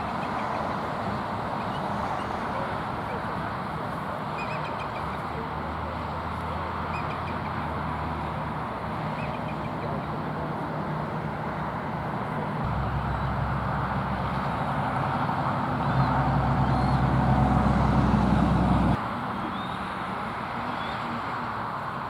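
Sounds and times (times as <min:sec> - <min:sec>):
low rumble of road traffic: 0:00.0 - 0:22.0
high chirping bird calls: 0:15.8 - 0:17.7.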